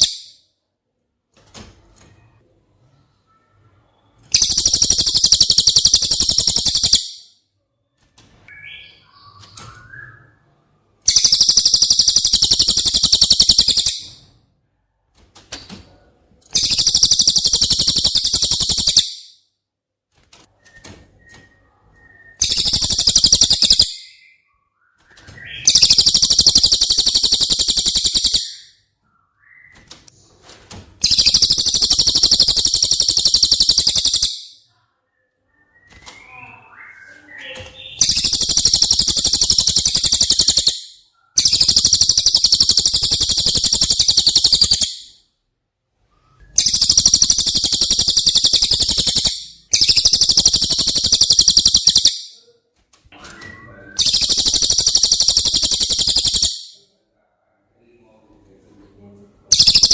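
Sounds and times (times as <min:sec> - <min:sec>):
bird rattling trill: 0:04.4 - 0:07.2, 0:11.1 - 0:14.2, 0:16.5 - 0:19.2, 0:22.4 - 0:23.9, 0:25.7 - 0:28.6, 0:31.0 - 0:34.5, 0:38.0 - 0:45.1, 0:46.6 - 0:52.2, 0:54.0 - 0:56.7, 0:59.5 - 0:59.9.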